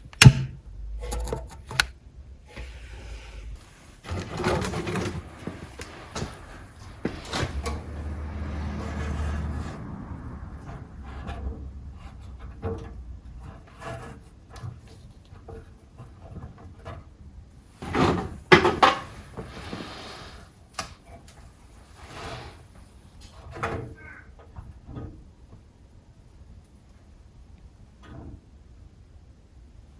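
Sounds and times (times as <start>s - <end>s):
rustling: 2.5s - 9.8s
knocks and clatter of objects: 4.0s - 7.9s, 17.8s - 19.6s.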